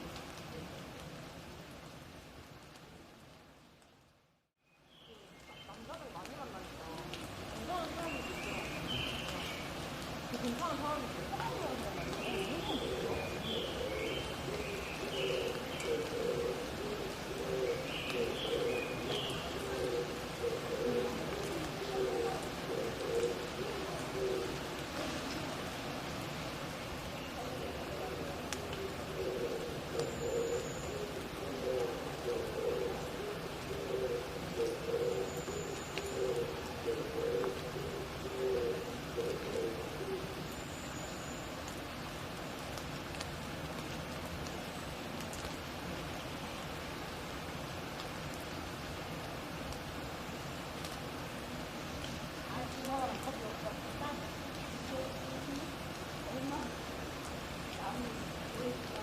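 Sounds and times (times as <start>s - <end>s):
steady hiss of wet forest: 0.0s - 59.0s
pigeons cooing: 11.0s - 25.8s, 27.4s - 40.5s.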